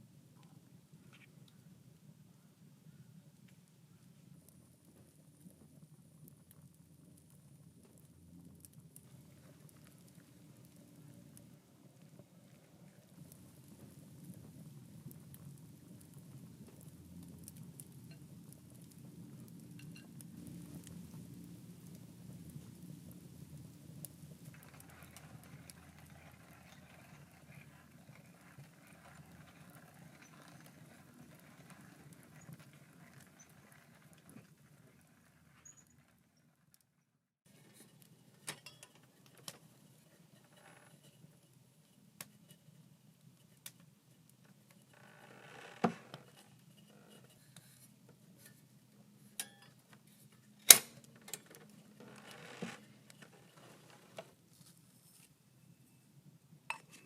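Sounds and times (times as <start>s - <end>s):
soft steady hum: 0.0s - 45.1s.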